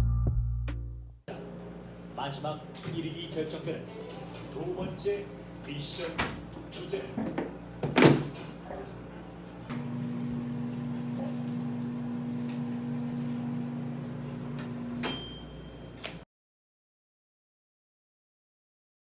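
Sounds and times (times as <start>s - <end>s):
small appliance motor humming: 9.7s - 15.0s.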